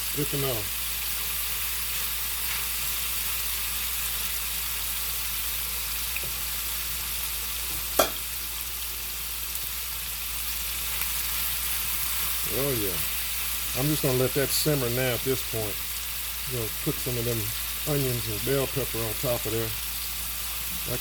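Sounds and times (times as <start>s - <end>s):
meat sizzling in a pan: 0.0s - 21.0s
sharp knock: 8.0s - 8.2s.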